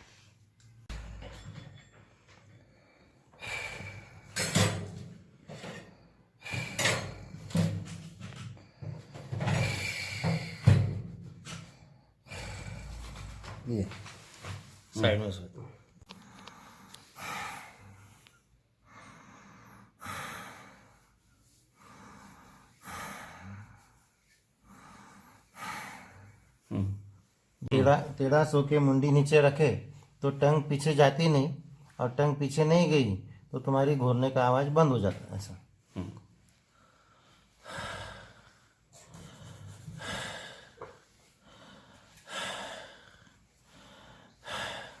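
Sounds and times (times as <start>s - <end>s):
man breathing deeply: 2.3s - 13.6s, 16.1s - 26.7s, 36.5s - 45.0s.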